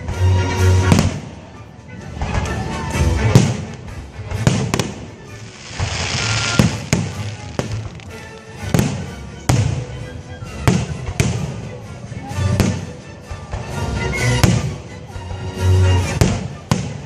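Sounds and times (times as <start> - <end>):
music: 0.0 - 17.0
fireworks bangs: 4.4 - 9.6
fireworks hissing crackle: 4.6 - 9.0.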